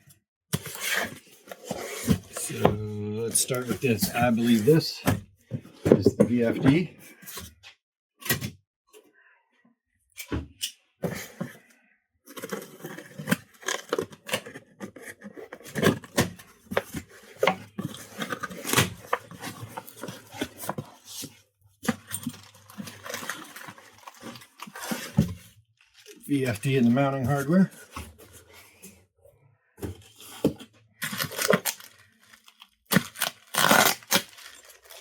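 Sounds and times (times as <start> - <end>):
packaging rustling: 21.9 - 25.2, 30.1 - 35.0.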